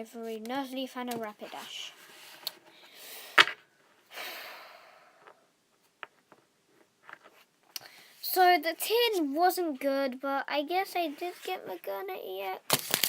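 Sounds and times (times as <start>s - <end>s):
breathy exhales: 4.1s - 5.4s.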